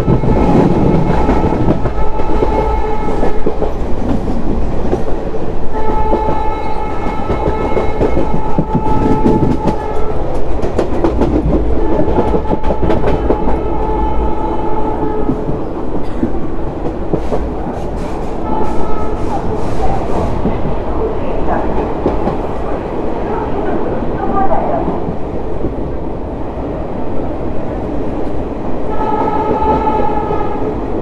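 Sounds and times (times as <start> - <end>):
locomotive horn blasts: 0.0 - 3.4, 5.7 - 10.3, 11.8 - 15.5, 18.4 - 19.6, 28.9 - 30.8.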